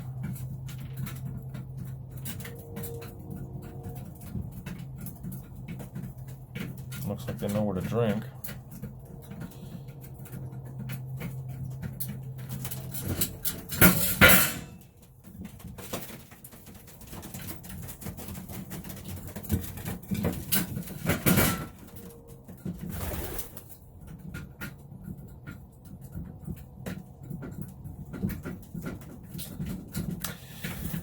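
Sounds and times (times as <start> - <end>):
pigeons cooing: 22.7 - 23.8.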